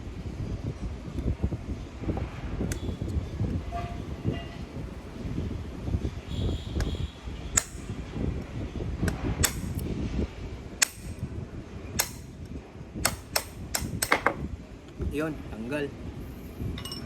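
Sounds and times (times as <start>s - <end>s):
hammer knocking on metal: 13.1s - 14.4s
handling noise: 13.9s - 14.5s.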